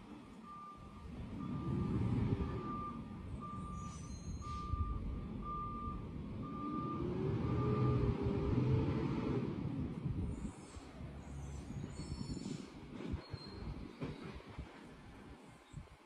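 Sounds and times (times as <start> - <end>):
diesel engine revving: 0.0 - 12.0
reversing alarm beeping: 0.4 - 8.4.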